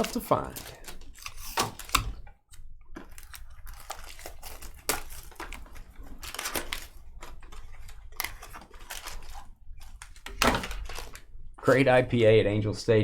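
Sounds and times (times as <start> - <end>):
cards rustling and sliding: 0.0 - 2.2.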